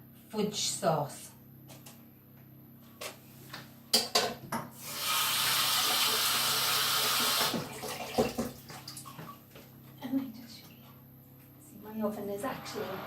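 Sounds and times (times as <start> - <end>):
tap water running into sink: 4.8 - 9.4.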